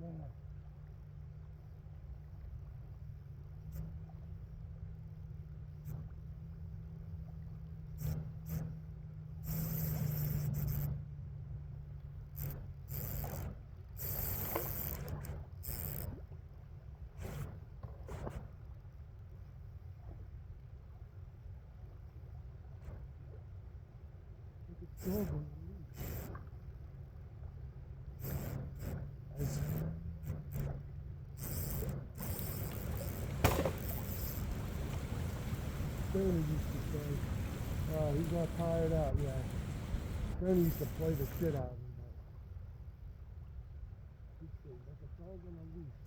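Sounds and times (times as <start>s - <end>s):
fishing reel mechanism: 9.4s - 11.0s, 12.2s - 16.2s, 25.0s - 25.3s, 25.9s - 26.4s, 28.2s - 41.6s
water sloshing and splashing: 32.2s - 41.5s
low river rumble: 32.2s - 41.6s
wind noise: 32.2s - 41.6s.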